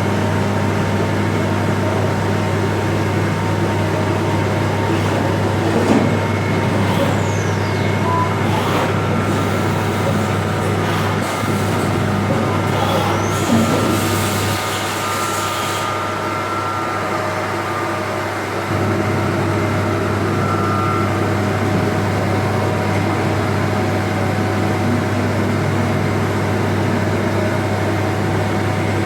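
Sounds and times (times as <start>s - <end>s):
machine hum: 0.2s - 19.8s
high machine whine: 0.2s - 23.0s.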